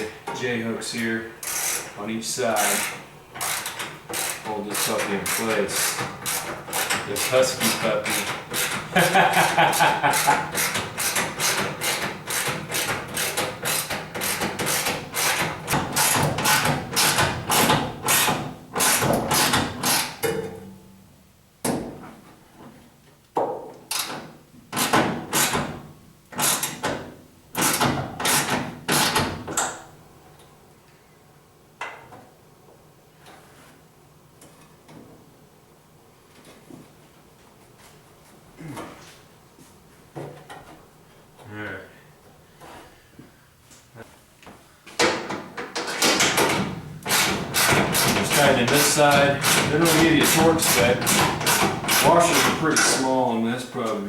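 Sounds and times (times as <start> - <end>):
ratchet wrench ratcheting: 1.4 - 1.9, 2.6 - 7.4, 10.2 - 15.4, 47.1 - 52.5.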